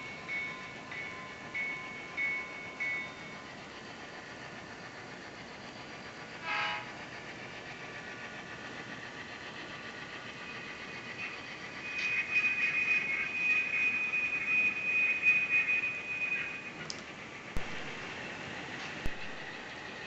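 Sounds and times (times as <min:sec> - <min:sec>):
steady high-pitched tone: 0:00.0 - 0:08.0, 0:09.7 - 0:16.8
locomotive horn toot: 0:06.4 - 0:07.0.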